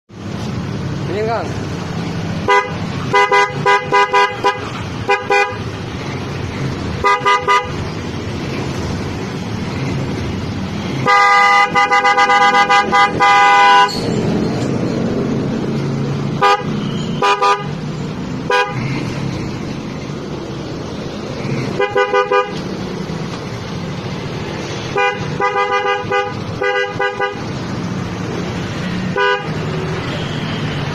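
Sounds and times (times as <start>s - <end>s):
two-tone car horn toots: 11.1s - 14.0s, 16.4s - 17.8s, 25.0s - 27.4s.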